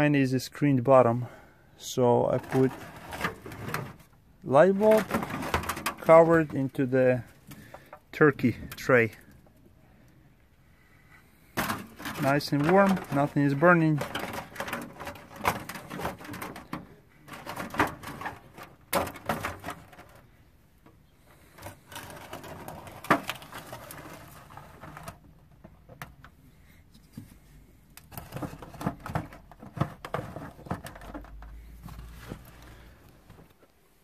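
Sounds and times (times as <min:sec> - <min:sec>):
knocks and clicks of gear handled: 0:11.6 - 0:20.2.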